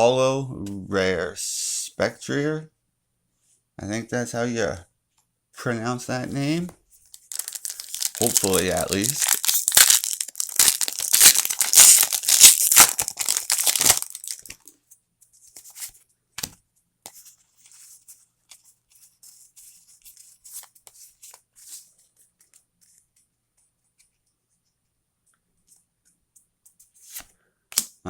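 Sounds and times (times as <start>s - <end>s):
cards rustling and clicking: 7.0s - 14.7s
foil wrapper tearing and crinkling: 7.1s - 14.5s.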